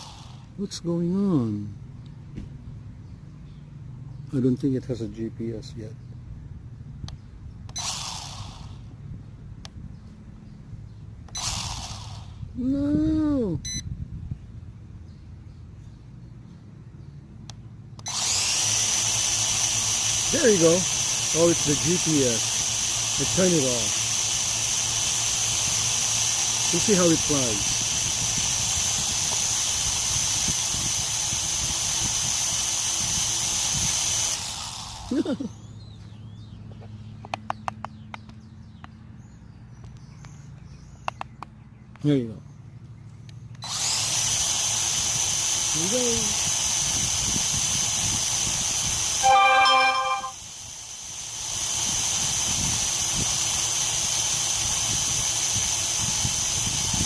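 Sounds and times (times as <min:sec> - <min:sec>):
drone propellers whining: 0:00.0 - 0:00.6, 0:49.2 - 0:50.6
birds chirping: 0:00.0 - 0:07.8, 0:09.6 - 0:11.4, 0:14.2 - 0:18.0, 0:35.2 - 0:43.6
wind buffeting microphone: 0:13.8 - 0:14.5
sharp clicks: 0:37.2 - 0:39.0, 0:41.0 - 0:42.1
short electronic beep: 0:49.2 - 0:50.4.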